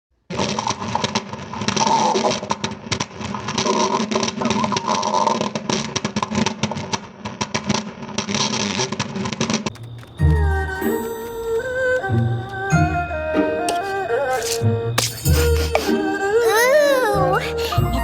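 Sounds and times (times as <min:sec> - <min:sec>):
stomach growling: 0:03.6 - 0:05.6.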